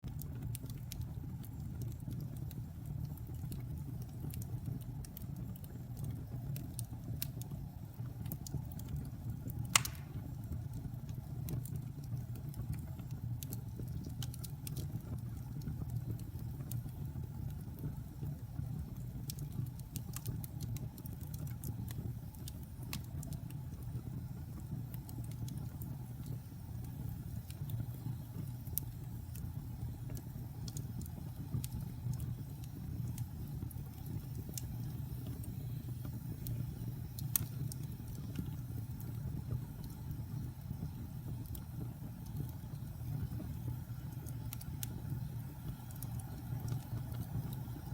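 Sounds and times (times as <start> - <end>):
fire rumbling and crackling: 0.0 - 47.9
fire sharp pop: 9.7 - 10.4.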